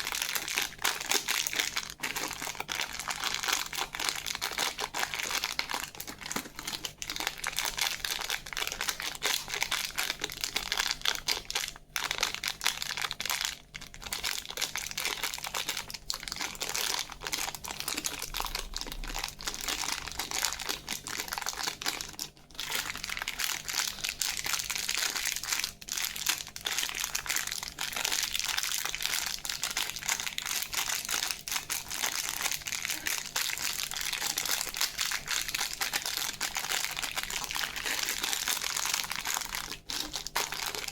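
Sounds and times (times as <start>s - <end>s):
candy wrappers crinkling: 0.0s - 40.9s.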